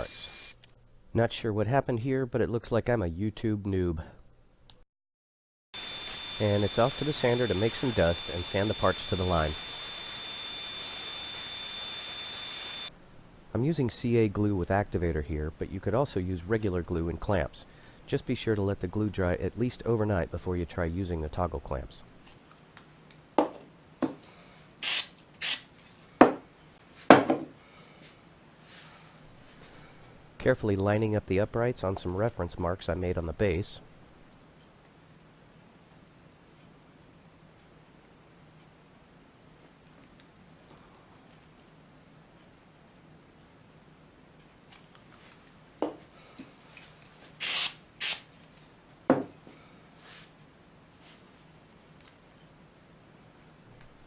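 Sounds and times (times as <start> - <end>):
aerosol spray hisses: 5.8 - 12.9
plywood parts knocking on bench: 27.1 - 27.5, 49.1 - 49.4.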